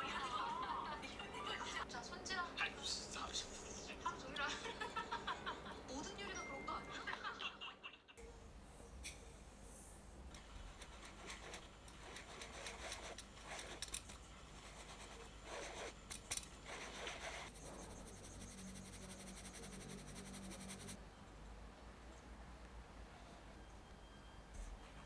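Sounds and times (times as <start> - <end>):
fast even ticking: 17.2 - 21.0
low hum: 17.5 - 21.0.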